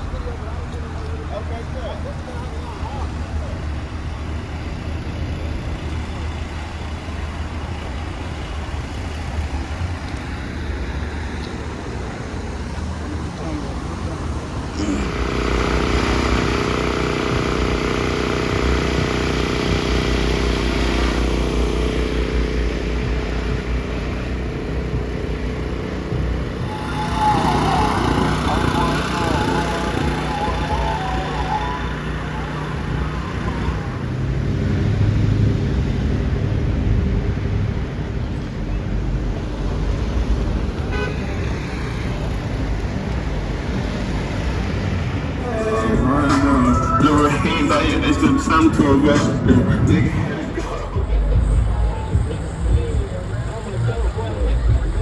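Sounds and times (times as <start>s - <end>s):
low rumble of cars: 0.0s - 55.0s
vehicle engine running: 0.0s - 55.0s
car horn toot: 26.5s - 32.6s, 40.9s - 41.6s.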